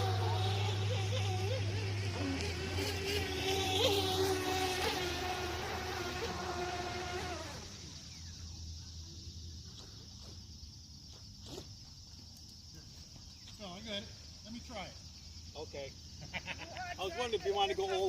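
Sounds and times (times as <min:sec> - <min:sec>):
toy boat motor whining: 0:00.0 - 0:08.4
crickets chirring: 0:00.0 - 0:18.0.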